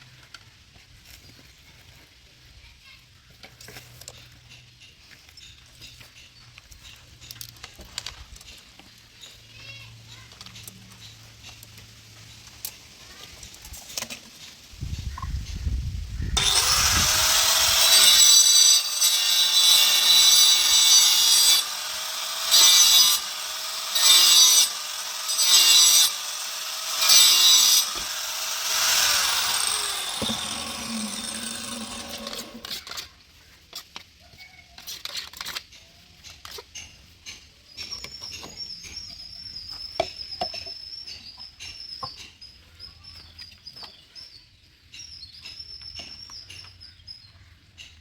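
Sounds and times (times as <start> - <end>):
power tool cutting: 16.4 - 32.9.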